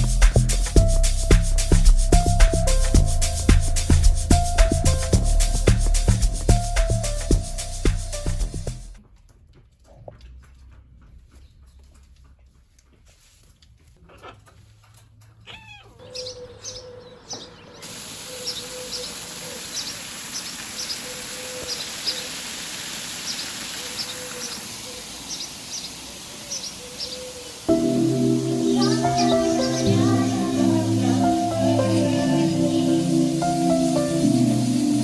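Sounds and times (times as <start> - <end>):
steady hiss: 0.0 - 9.0, 17.8 - 35.0
birds chirping: 16.0 - 35.0
falling bird call: 17.8 - 35.0.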